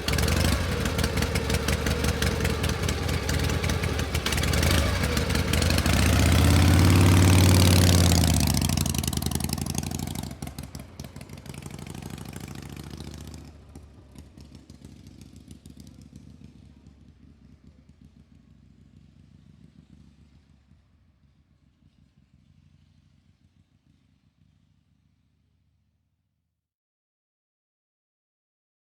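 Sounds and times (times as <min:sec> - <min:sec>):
engine revving: 0:00.0 - 0:13.6.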